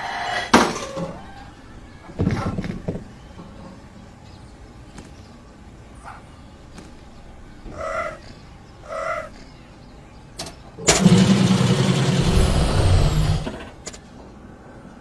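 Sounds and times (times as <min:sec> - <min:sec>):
loud rumbling engine-like burst: 0:10.9 - 0:13.8.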